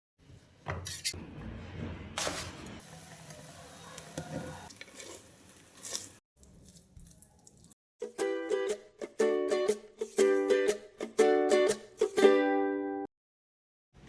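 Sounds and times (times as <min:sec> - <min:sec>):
stirring strokes in pan: 0:02.9 - 0:07.6.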